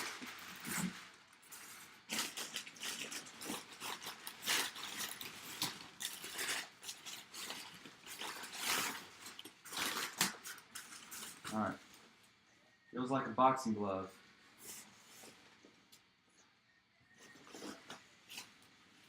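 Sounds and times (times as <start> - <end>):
packaging rustling and crinkling: 0.0 - 12.2.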